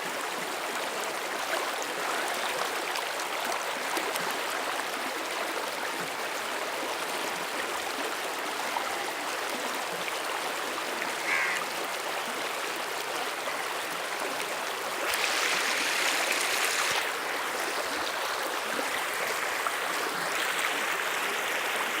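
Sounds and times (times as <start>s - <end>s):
floodwater rushing: 13.5s - 22.0s.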